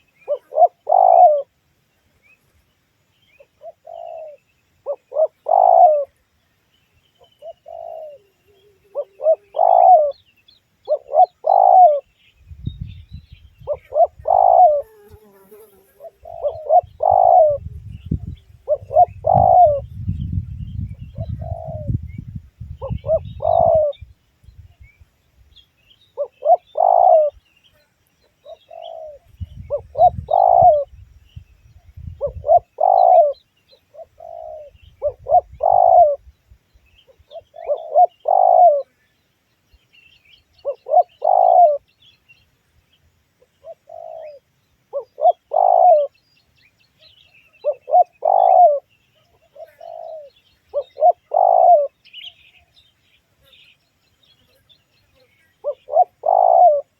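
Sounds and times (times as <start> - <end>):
doves cooing: 0.0 - 1.5, 3.6 - 6.2, 7.4 - 10.2, 10.9 - 12.1, 13.6 - 19.9, 21.0 - 22.0, 22.8 - 24.0, 26.2 - 27.4, 28.4 - 30.9, 32.2 - 36.2, 37.3 - 38.9, 40.6 - 41.9, 43.6 - 46.1, 47.5 - 52.0, 55.6 - 56.9
small birds chirping: 0.0 - 56.9.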